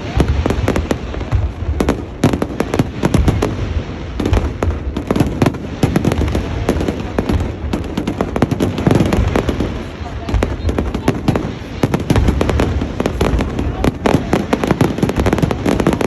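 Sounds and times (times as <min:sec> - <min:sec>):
fireworks bangs and crackling pops: 0:00.0 - 0:16.0.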